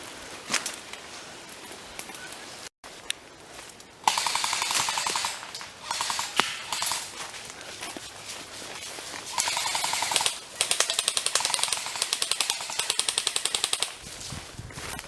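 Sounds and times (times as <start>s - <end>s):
airsoft guns firing bursts: 4.0s - 7.3s, 9.3s - 14.0s
single sharp gunshot crack: 6.3s - 6.8s.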